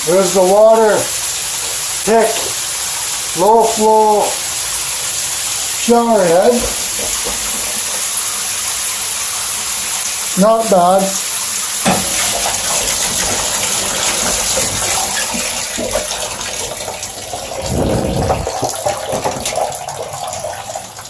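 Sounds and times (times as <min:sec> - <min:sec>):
shower head spraying water: 0:00.0 - 0:16.5
low splash: 0:17.4 - 0:19.6.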